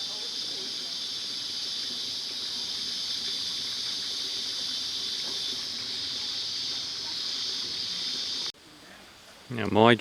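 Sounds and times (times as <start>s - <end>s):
high-pitched hiss: 0.0s - 10.0s.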